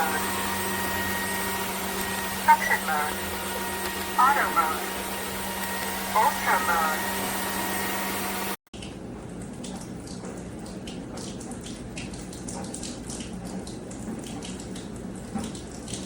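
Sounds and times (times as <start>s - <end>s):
vacuum motor hum: 0.0s - 8.6s
water running and splashing: 0.0s - 16.0s.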